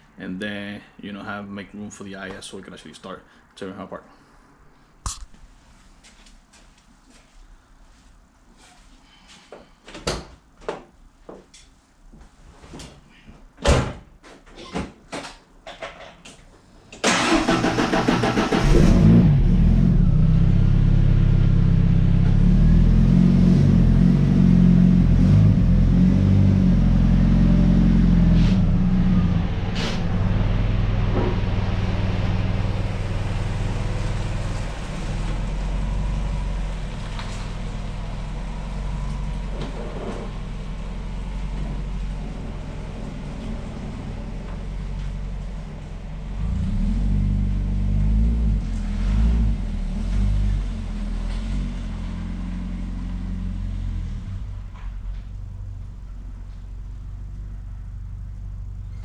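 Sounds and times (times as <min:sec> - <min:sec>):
truck engine starting and idling: 0:17.0 - 0:55.8.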